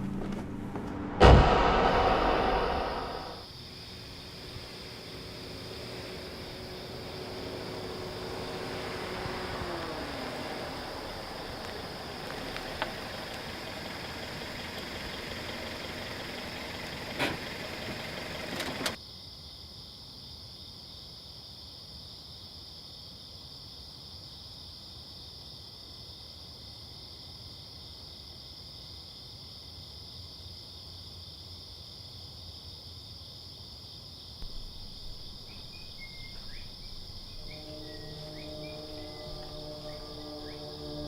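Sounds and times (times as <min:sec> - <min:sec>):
crickets chirping: 0:02.6 - 0:41.0
engine idling: 0:04.7 - 0:19.0, 0:34.4 - 0:41.0
low sustained musical tones: 0:34.4 - 0:41.0.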